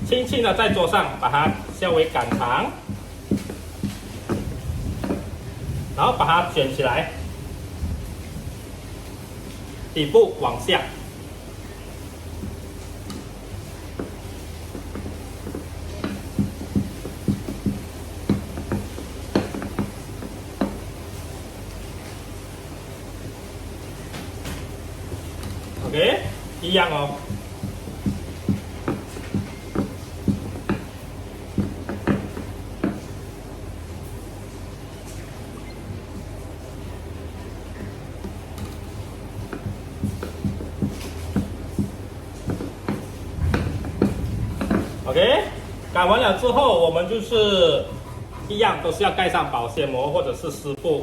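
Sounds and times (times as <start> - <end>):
low steady hum: 0.0 - 48.5
rolling pin knocking on table: 0.6 - 5.3, 13.9 - 20.8, 27.2 - 30.9.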